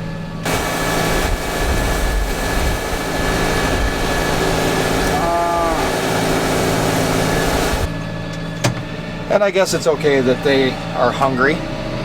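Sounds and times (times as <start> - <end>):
loud rushing noise: 0.5 - 8.0
vehicle engine running: 0.5 - 8.6.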